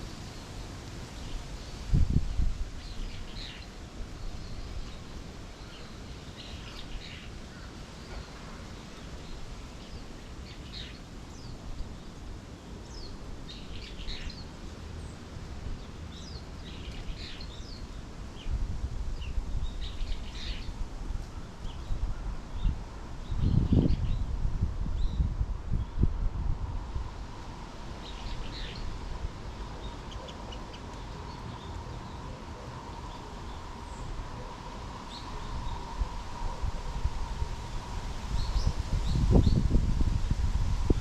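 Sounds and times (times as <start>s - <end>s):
faint outdoor background noise: 0.0s - 41.0s
small birds chirping: 2.8s - 12.2s, 28.0s - 36.1s.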